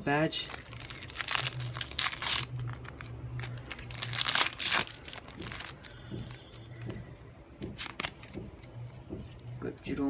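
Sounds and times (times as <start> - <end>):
wrapper crinkling and tearing: 0.3 - 6.6
handling rustles: 0.5 - 9.6.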